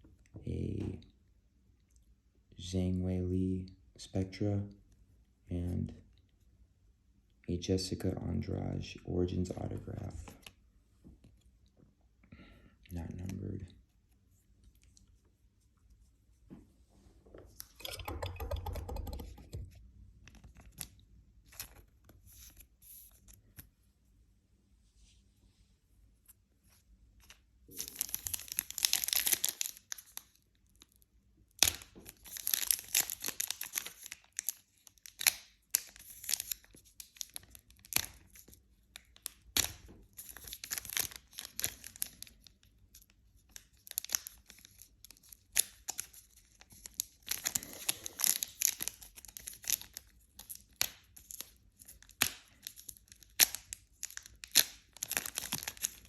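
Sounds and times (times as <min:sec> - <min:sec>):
wrapper tearing and crinkling: 0:27.7 - 0:31.0, 0:31.6 - 0:56.0.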